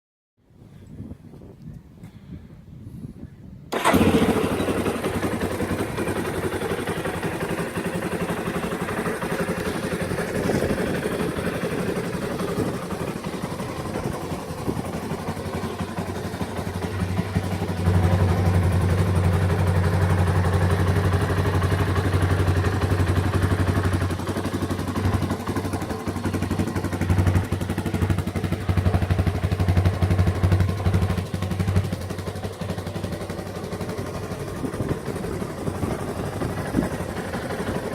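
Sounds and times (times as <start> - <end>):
quad bike engine running: 3.7 - 37.9.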